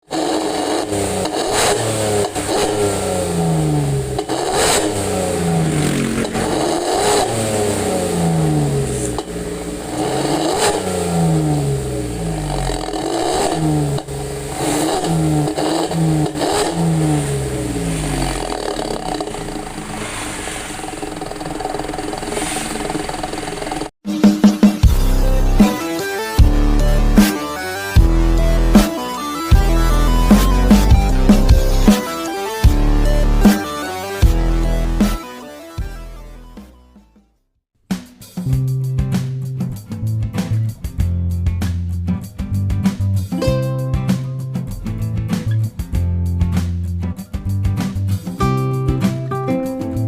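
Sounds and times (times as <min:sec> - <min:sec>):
car engine revving: 0:00.0 - 0:24.0, 0:24.9 - 0:35.2.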